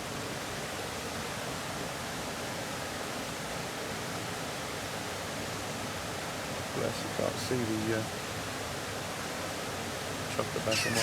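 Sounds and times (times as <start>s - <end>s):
stream rushing over stones: 5.9s - 11.0s.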